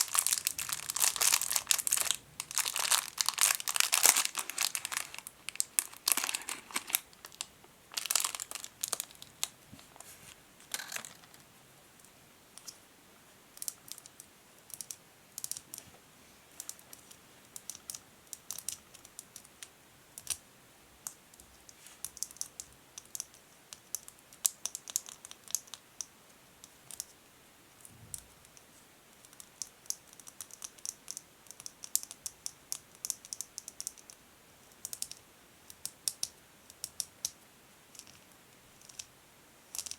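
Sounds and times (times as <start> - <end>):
plastic bag crinkling: 0.0 - 11.4.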